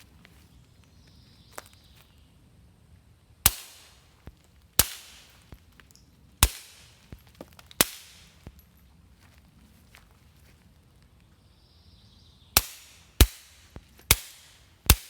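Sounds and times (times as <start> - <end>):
suppressed pistol shots: 3.5 - 4.0.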